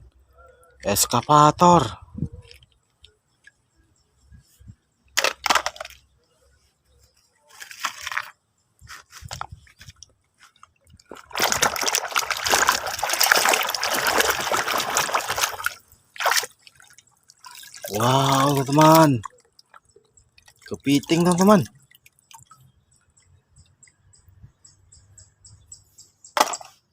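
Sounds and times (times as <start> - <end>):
water splashing on plastic toy: 10.9 - 22.6
gushing water: 11.2 - 19.2.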